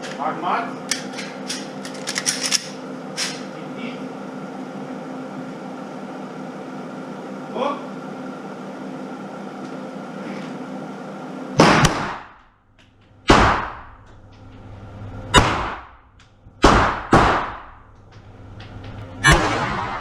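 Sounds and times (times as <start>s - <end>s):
ventilation hum: 0.0s - 20.0s
pistol shots: 11.6s - 12.3s, 15.4s - 15.9s, 16.6s - 17.7s.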